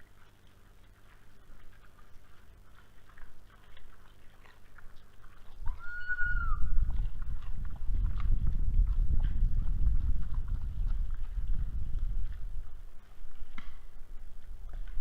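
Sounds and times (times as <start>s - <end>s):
raccoon dog whining: 5.6s - 6.7s.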